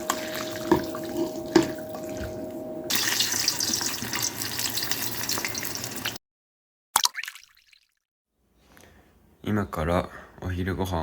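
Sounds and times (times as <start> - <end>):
steady hum: 0.0 - 2.9
tap water running into sink: 0.0 - 6.2.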